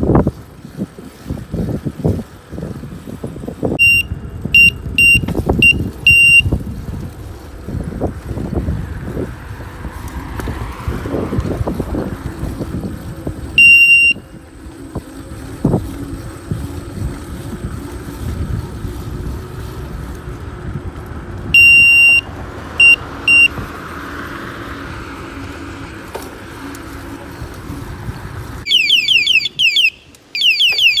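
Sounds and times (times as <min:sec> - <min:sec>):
wind and riding noise: 0:00.0 - 0:31.0
electric bike horn beeping: 0:03.7 - 0:07.0, 0:12.4 - 0:18.2, 0:21.5 - 0:23.7, 0:28.6 - 0:31.0
falling siren-like tone: 0:28.7 - 0:31.0.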